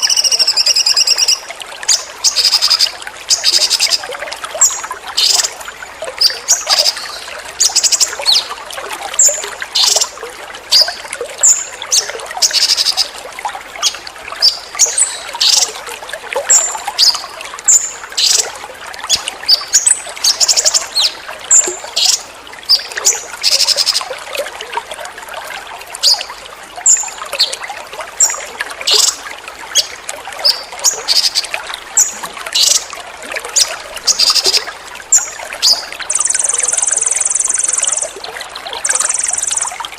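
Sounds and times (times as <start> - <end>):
songbird high-pitched calls: 0.0 - 1.4, 12.4 - 13.1, 28.9 - 29.2, 33.6 - 38.2, 38.8 - 39.8
water trickling: 0.0 - 39.9.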